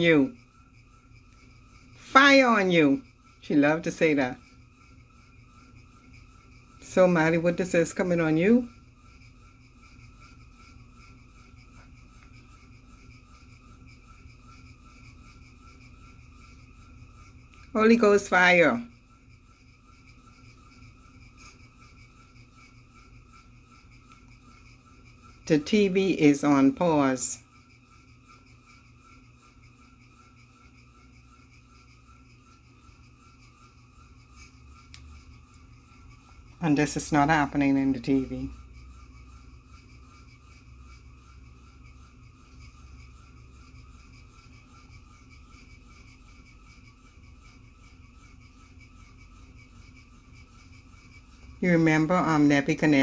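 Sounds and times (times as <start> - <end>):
faint electrical whine and hum: 0.0 - 53.0
thin high steady tones: 0.0 - 53.0
small ticks: 0.4 - 2.0, 8.7 - 17.8, 18.9 - 25.5, 27.4 - 36.6, 38.5 - 51.6.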